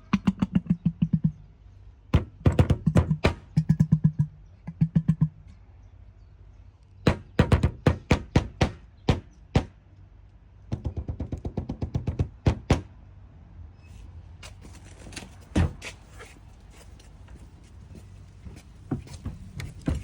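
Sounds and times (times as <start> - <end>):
knocks on hollow object: 2.2 - 5.4, 7.1 - 9.7
low steady rumble: 16.0 - 20.0.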